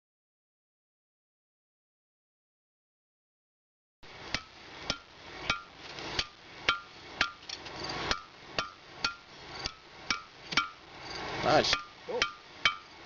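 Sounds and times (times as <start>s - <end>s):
hammer striking metal on anvil: 4.3s - 7.4s, 8.1s - 10.8s, 11.7s - 12.9s
metallic ring: 4.3s - 13.0s.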